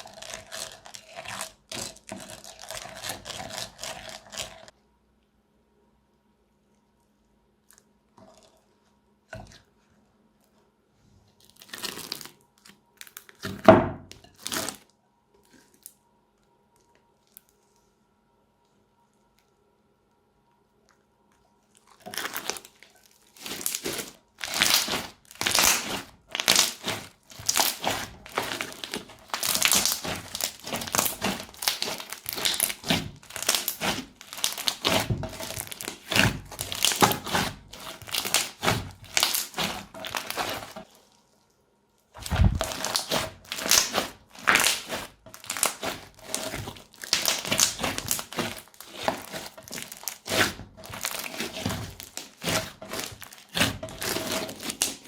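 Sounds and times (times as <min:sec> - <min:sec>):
crunchy slime being squeezed: 0:00.0 - 0:04.7, 0:11.4 - 0:13.6, 0:21.7 - 0:41.1, 0:42.2 - 0:55.0.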